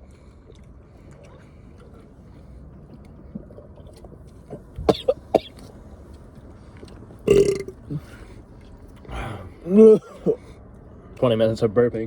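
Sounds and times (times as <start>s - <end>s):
person coughing: 4.9s - 5.6s.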